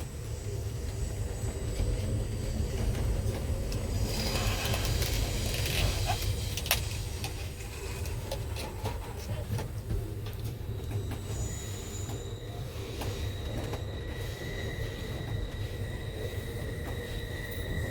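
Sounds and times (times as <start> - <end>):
train rumbling: 0.0 - 17.9
wheels clicking on track: 2.5 - 14.0.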